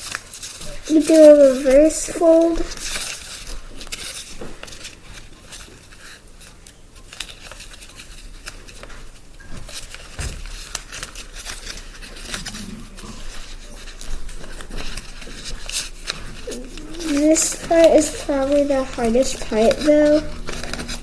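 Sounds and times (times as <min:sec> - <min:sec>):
paper crinkling and rustling: 0:00.0 - 0:21.0.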